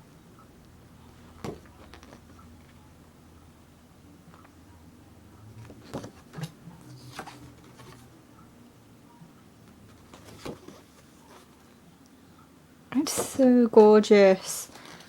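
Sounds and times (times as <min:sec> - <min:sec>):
paper pages rustling: 0:05.6 - 0:08.1, 0:09.9 - 0:11.7.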